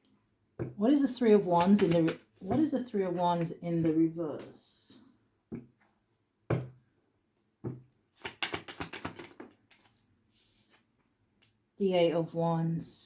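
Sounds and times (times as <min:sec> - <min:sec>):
cards clicking while shuffled: 0:01.6 - 0:02.3, 0:08.2 - 0:10.0.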